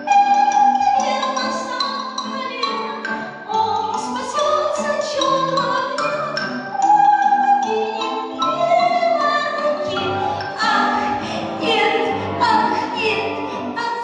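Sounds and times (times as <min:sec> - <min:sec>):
instrumental accompaniment: 0:00.0 - 0:14.0
singer holding long notes: 0:06.8 - 0:14.0.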